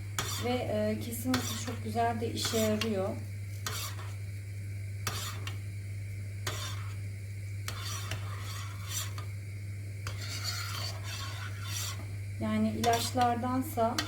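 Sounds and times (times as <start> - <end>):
steady low hum: 0.0 - 14.0
utensil scraping a pot: 0.2 - 4.2, 5.0 - 5.6, 6.4 - 7.0, 7.6 - 9.4, 10.0 - 14.0.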